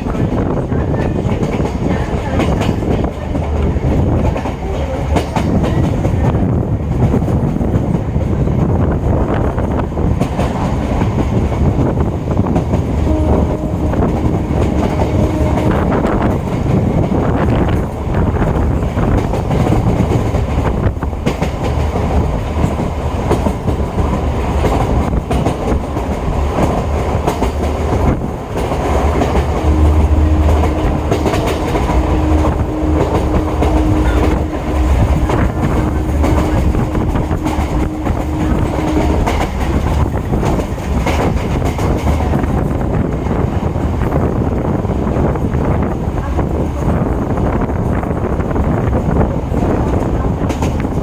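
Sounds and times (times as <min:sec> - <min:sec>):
train rumble from inside: 0:00.0 - 0:51.0
wheels clacking over rail joints: 0:10.1 - 0:44.3
steady low tone: 0:13.0 - 0:16.3, 0:28.3 - 0:40.4.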